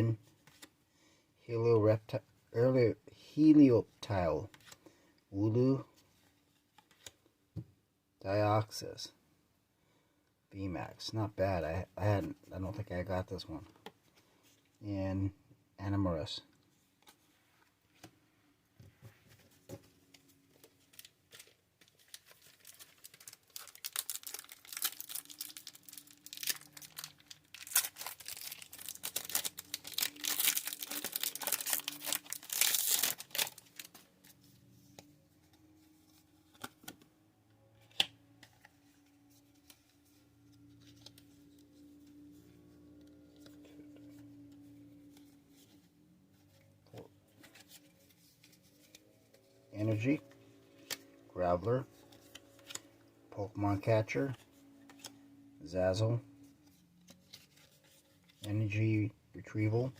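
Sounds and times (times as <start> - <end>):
foil wrapper tearing and crinkling: 22.1 - 33.9.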